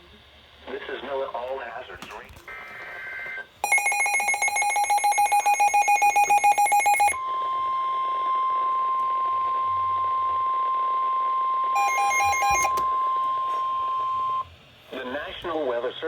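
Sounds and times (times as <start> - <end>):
steady warning alarm tone: 3.2 - 14.5
rapid electronic alert beeping: 3.6 - 7.2, 11.8 - 12.8.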